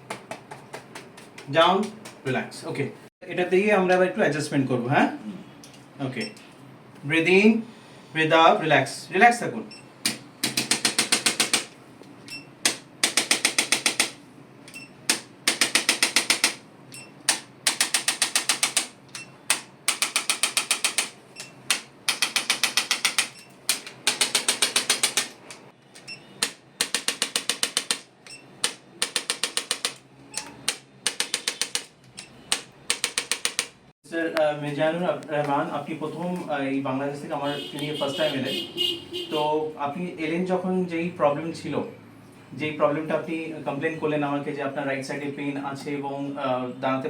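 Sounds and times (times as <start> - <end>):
adjusting instrument rapid clicks: 10.0 - 11.8, 12.6 - 14.2, 15.1 - 16.6, 17.3 - 25.6, 26.4 - 30.0, 32.5 - 33.8.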